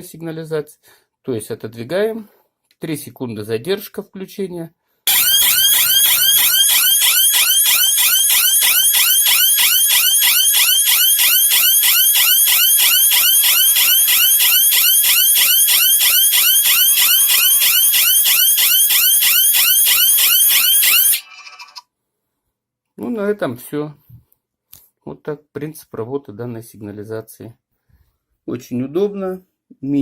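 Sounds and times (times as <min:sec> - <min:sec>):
electronic alarm siren sweeping: 0:05.1 - 0:21.3.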